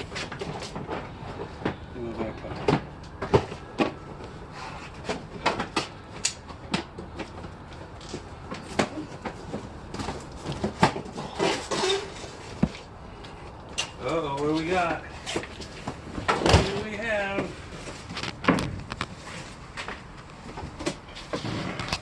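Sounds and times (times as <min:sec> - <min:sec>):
boxes knocking and rattling: 0:00.0 - 0:12.9, 0:15.3 - 0:22.0
scraping rustle: 0:08.0 - 0:12.9, 0:16.6 - 0:22.0.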